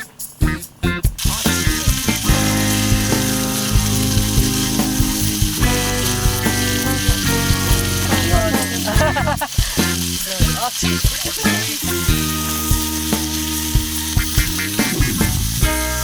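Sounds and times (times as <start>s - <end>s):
background music of held chords: 0.4s - 10.7s, 11.8s - 16.0s
firewood crackling and popping: 1.2s - 16.0s.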